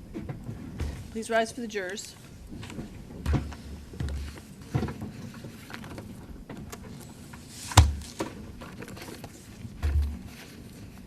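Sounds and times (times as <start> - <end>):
chair or bench bumps: 7.6 - 8.4.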